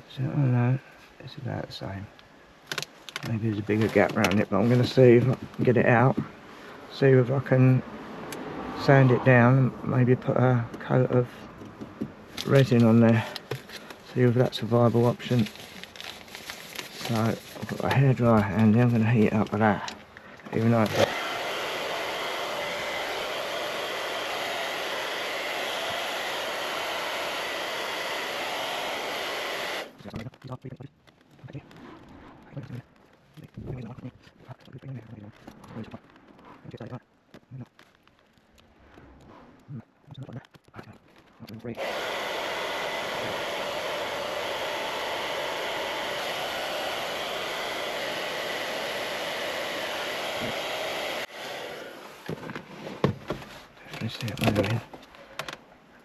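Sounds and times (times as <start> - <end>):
hairdryer blowing air: 20.6 - 30.0, 41.8 - 52.3
faint motor whine: 41.8 - 52.3.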